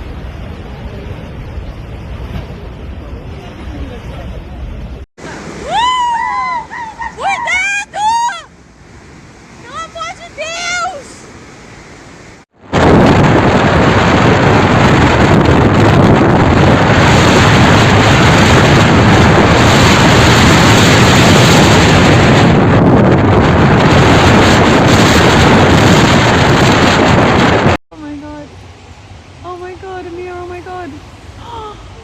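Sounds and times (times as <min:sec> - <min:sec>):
strong wind buffeting microphone: 0:12.5 - 0:32.0.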